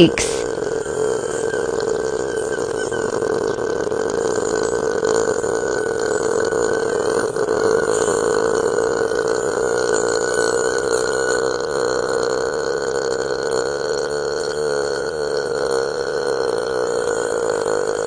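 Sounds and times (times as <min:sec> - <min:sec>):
woman belching: 0:00.0 - 0:00.8.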